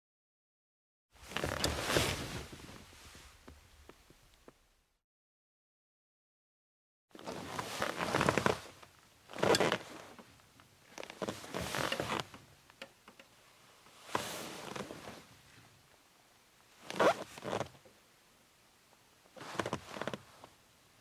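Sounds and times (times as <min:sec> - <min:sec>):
leather chair creaking: 0:01.2 - 0:04.5, 0:07.2 - 0:12.5, 0:14.1 - 0:15.3, 0:16.8 - 0:17.8, 0:19.3 - 0:20.6.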